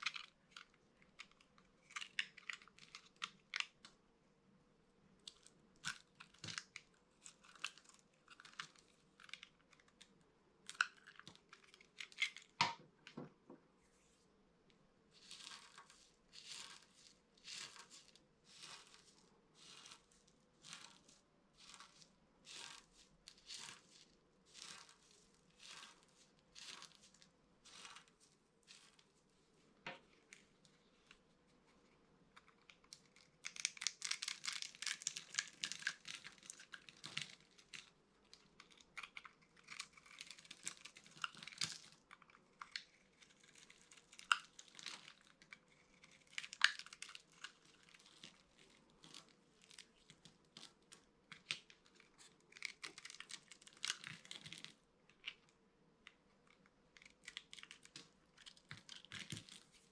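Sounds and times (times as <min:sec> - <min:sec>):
dry soap crunching: 0:00.0 - 0:04.0, 0:05.2 - 0:12.6, 0:15.1 - 0:59.9
soap scraping strokes: 0:15.1 - 0:55.5.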